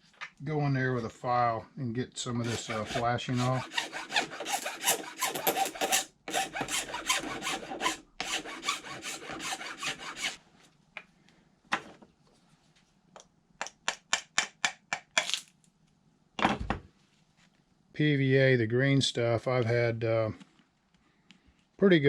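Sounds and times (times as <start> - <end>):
hand file scraping: 2.4 - 10.4.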